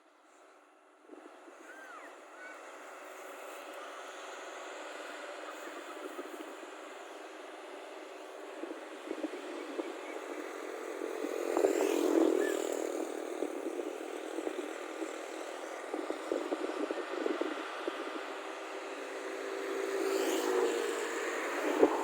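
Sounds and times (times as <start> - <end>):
motor vehicle passing with rattling: 8.6 - 22.0.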